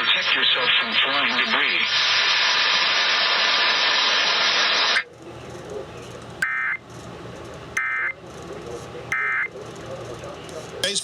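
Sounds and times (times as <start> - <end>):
radio static hiss: 0.0 - 5.1.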